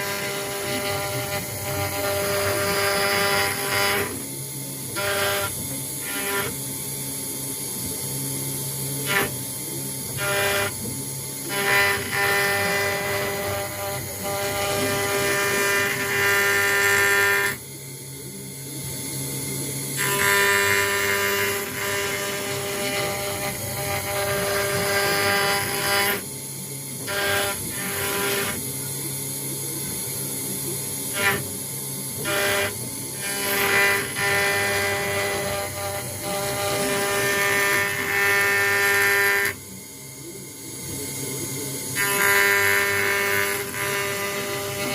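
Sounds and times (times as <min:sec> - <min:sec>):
tool cutting acrylic: 0:00.0 - 0:06.8, 0:09.0 - 0:17.6, 0:19.9 - 0:26.3, 0:27.0 - 0:28.8, 0:31.0 - 0:39.6, 0:41.9 - 0:44.9
router spindle whine: 0:00.0 - 0:44.9.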